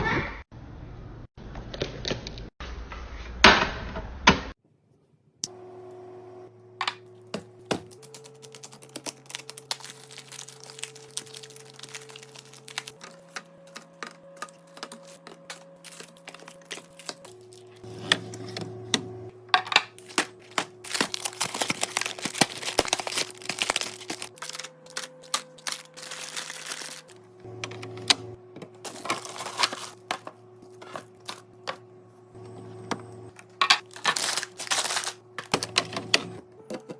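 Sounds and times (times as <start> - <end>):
plastic packaging clicking and crinkling: 7.3 - 18.6, 19.6 - 28.2, 28.8 - 31.8, 33.4 - 36.9
soft background music: 7.9 - 36.9.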